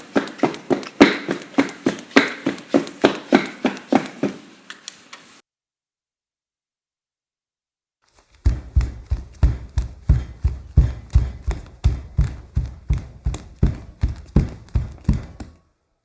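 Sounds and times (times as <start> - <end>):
running footsteps: 8.1 - 15.6.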